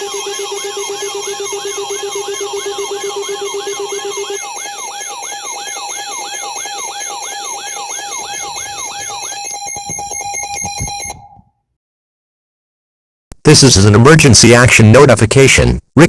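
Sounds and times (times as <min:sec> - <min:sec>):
electronic siren yelping: 0:00.0 - 0:11.4
steady alarm tones: 0:00.0 - 0:11.5.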